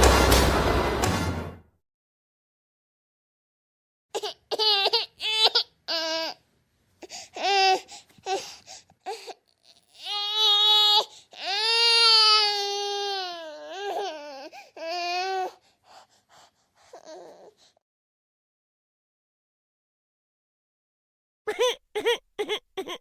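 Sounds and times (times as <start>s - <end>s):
baby crying: 4.1s - 6.4s, 7.4s - 15.6s, 16.9s - 17.6s, 21.5s - 23.0s.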